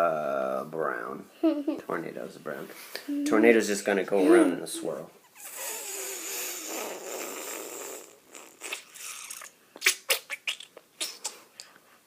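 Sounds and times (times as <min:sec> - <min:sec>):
person whooshing with mouth: 0:05.4 - 0:11.5.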